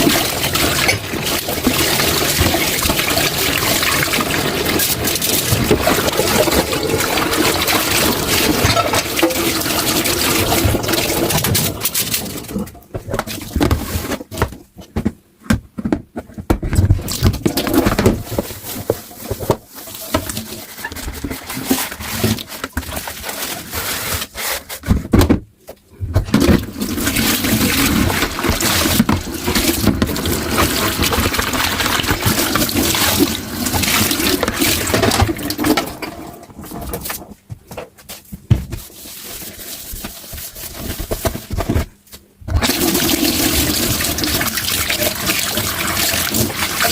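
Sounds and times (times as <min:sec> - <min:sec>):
tap water running into sink: 0:00.0 - 0:12.6, 0:26.3 - 0:36.2, 0:42.6 - 0:46.9.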